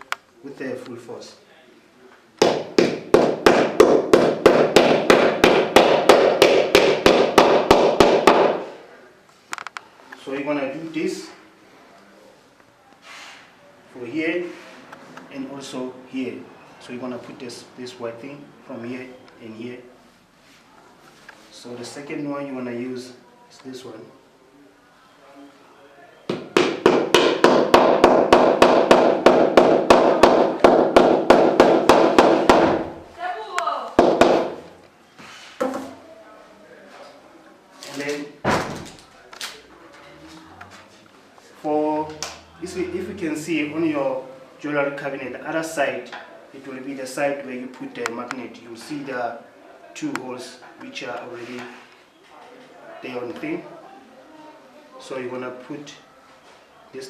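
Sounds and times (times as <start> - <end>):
hammer knocking on board: 2.4 - 8.6, 26.3 - 32.9, 34.0 - 34.6.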